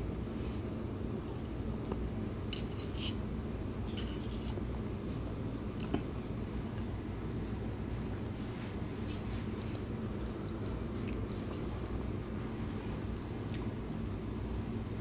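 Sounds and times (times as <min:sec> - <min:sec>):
steady low hum: 0:00.0 - 0:15.0
cutlery clinking on a plate: 0:02.6 - 0:03.2, 0:03.9 - 0:04.6.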